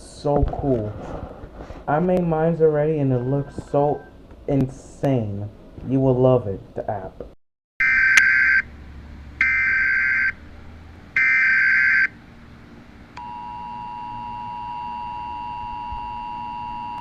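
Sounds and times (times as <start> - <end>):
two-tone attention signal: 13.2 - 17.0.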